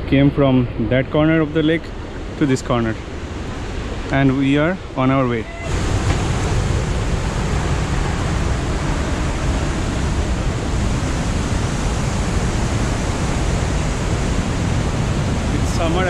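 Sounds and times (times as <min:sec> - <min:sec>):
waterfall rushing: 0:03.2 - 0:16.0.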